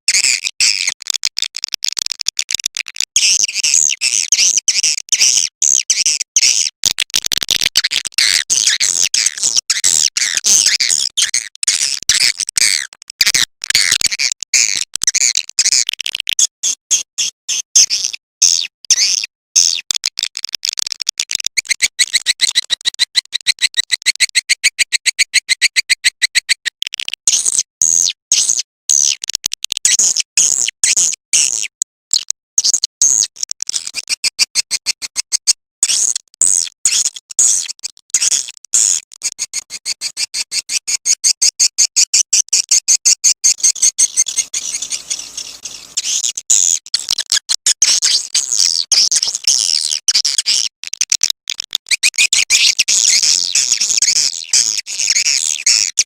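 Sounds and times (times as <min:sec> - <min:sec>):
fast high bird chirps: 0:21.6 - 0:26.6, 0:43.4 - 0:46.4.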